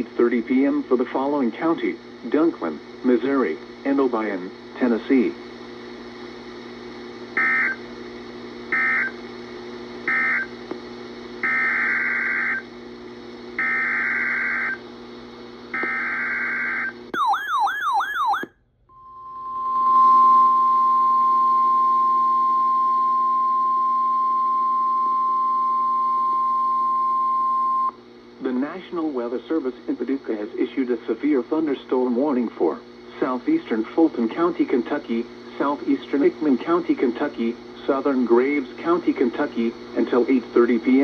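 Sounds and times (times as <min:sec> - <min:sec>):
steady warning alarm tone: 0:07.4 - 0:07.8, 0:08.7 - 0:09.2, 0:10.1 - 0:10.5, 0:11.4 - 0:12.7, 0:13.6 - 0:14.8, 0:15.7 - 0:27.9.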